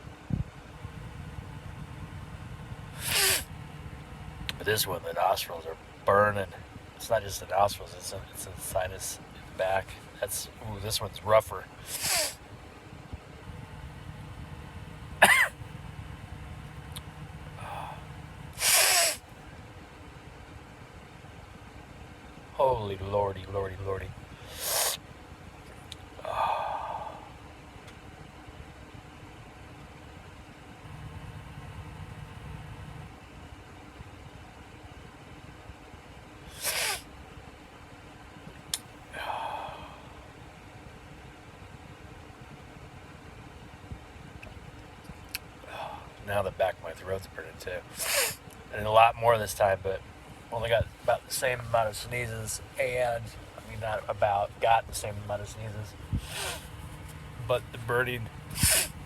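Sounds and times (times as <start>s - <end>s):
short breathy vocal sound: 2.9s - 3.6s, 11.8s - 12.4s, 17.0s - 19.2s, 26.2s - 27.4s, 39.1s - 40.2s, 56.2s - 57.8s, 58.5s - 59.0s
man sneezing: 11.9s - 12.4s, 15.0s - 15.6s, 17.0s - 19.2s, 36.5s - 37.0s, 47.9s - 48.4s, 58.5s - 59.0s.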